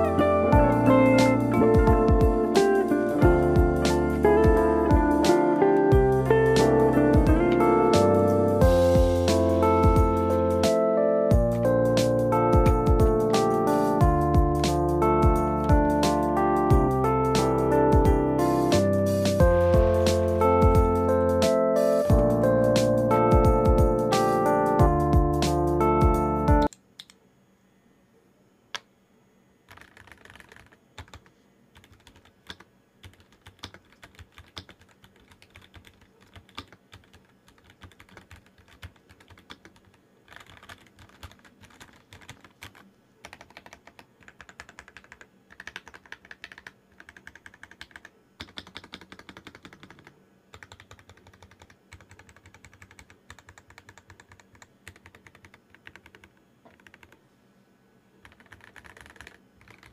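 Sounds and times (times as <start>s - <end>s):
mechanical keyboard typing: 29.7s - 57.2s, 58.2s - 59.9s.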